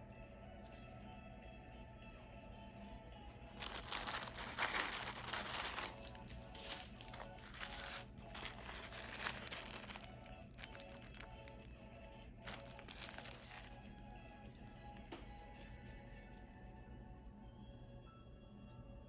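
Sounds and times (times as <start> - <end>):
background music: 0.0 - 19.0
packaging crinkling: 3.4 - 11.7, 12.5 - 16.5.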